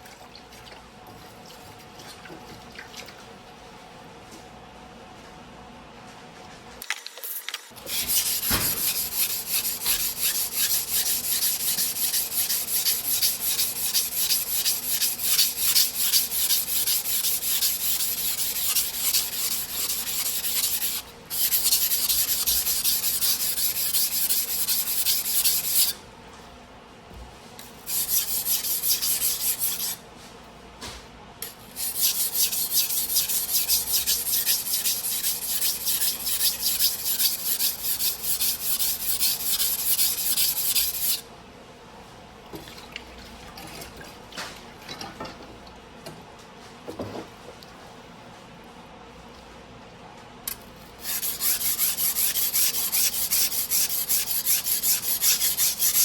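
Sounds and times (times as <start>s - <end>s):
knife scraping on whetstone: 7.8s - 26.0s, 27.6s - 30.0s, 31.4s - 41.2s, 50.9s - 56.0s.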